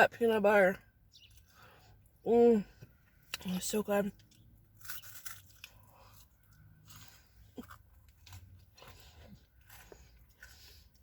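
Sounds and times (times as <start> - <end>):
person chewing crunchy food: 4.2 - 11.0.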